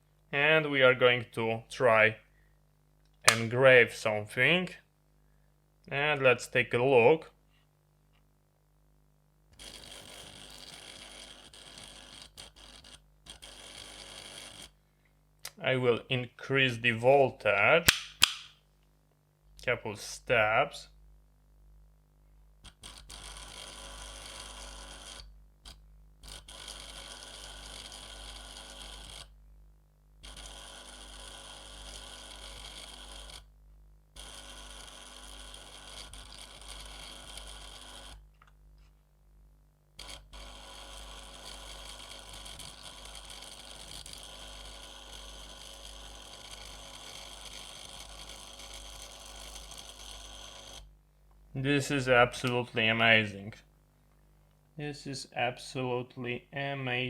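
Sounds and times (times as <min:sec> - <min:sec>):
clicks: 0:03.0 - 0:03.5, 0:17.8 - 0:18.5
electric engraver buzzing and crackling: 0:09.6 - 0:14.8, 0:22.7 - 0:25.3, 0:26.2 - 0:29.3, 0:30.2 - 0:33.5, 0:34.2 - 0:38.2, 0:40.0 - 0:50.9.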